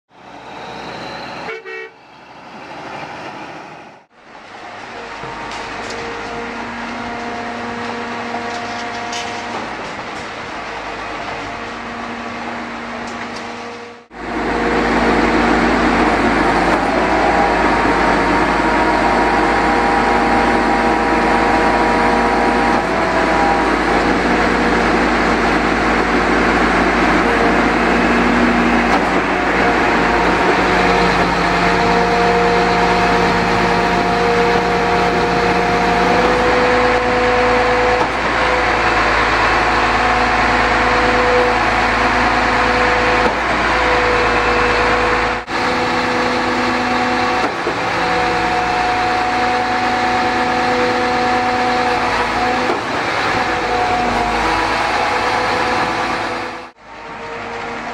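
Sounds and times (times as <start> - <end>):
truck engine driving concrete pump: 2.6 - 57.9.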